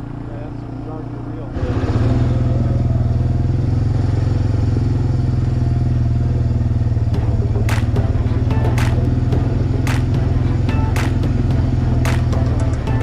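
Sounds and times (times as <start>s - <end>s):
atv engine running: 0.0s - 13.0s
sharp clacks: 7.6s - 13.0s.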